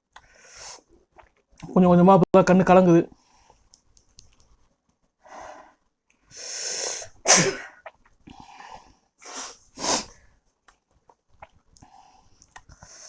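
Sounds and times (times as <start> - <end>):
sneeze-like burst: 6.7 - 7.8.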